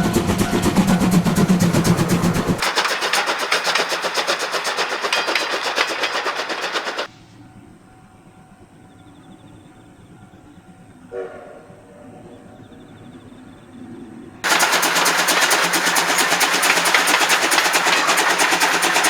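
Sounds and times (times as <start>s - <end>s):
steam train clattering on rails: 0.0s - 7.2s, 14.4s - 19.0s.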